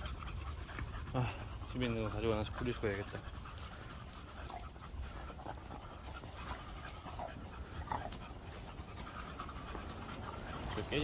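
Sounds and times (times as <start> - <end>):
dog panting: 0.0 - 11.0.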